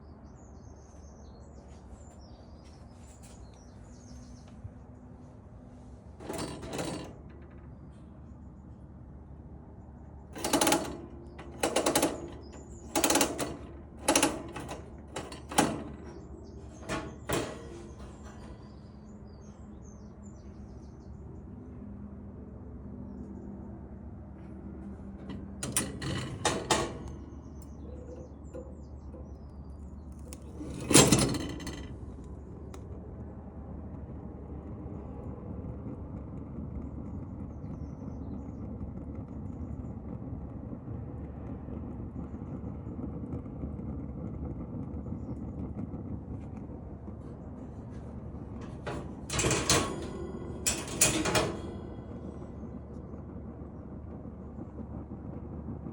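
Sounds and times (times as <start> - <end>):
steady low noise: 35.5 - 55.9.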